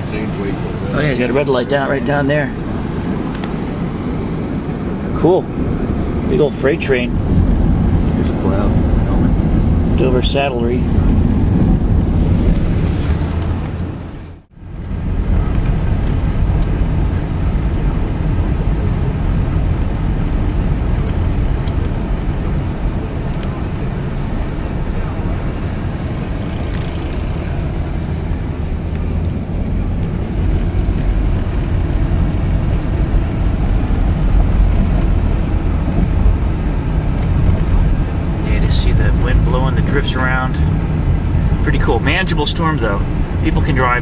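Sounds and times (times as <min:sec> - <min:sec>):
car road and engine noise: 0:00.0 - 0:44.0.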